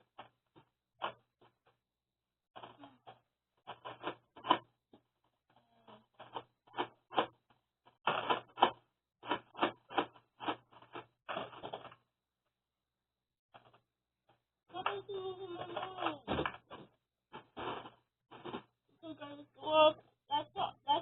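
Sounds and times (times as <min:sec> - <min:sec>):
irregular clicks and clatters: 0:00.0 - 0:01.8, 0:02.6 - 0:12.1, 0:13.5 - 0:18.8.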